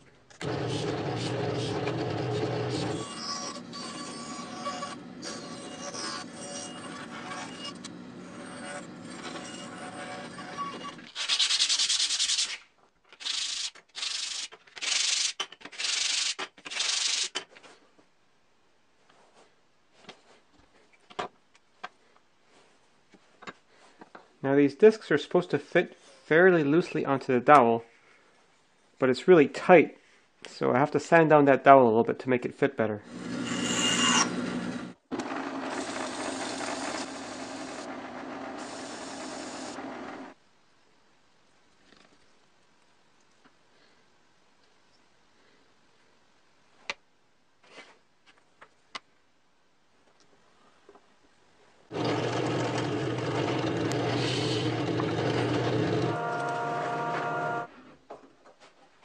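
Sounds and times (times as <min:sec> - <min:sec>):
sandpaper rubbing wood: 0:11.2 - 0:12.6, 0:54.1 - 0:55.9.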